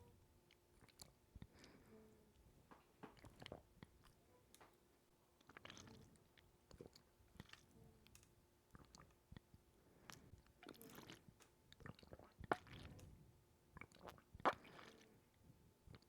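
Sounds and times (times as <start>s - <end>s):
wet clicks and squishes: 2.6s - 13.1s.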